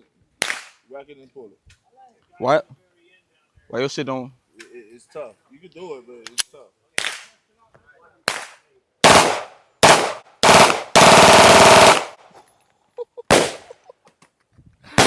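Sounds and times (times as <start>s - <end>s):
gunshots: 8.3s - 12.2s, 13.3s - 13.7s.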